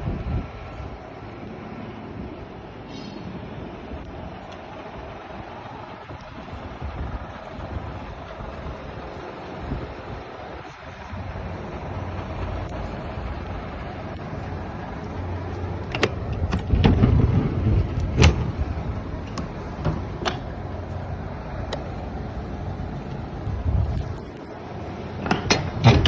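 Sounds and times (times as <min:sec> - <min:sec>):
truck idling: 0:00.0 - 0:26.0
sharp clicks and knocks: 0:15.8 - 0:18.6, 0:19.2 - 0:20.5, 0:25.2 - 0:26.0.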